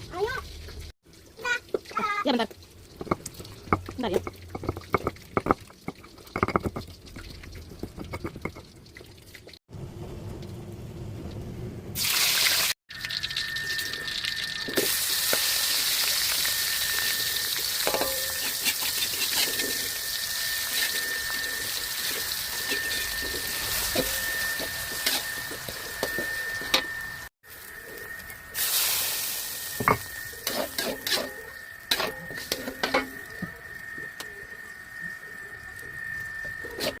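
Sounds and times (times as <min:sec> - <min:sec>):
kitchenware knocking and clattering: 0:03.0 - 0:06.9.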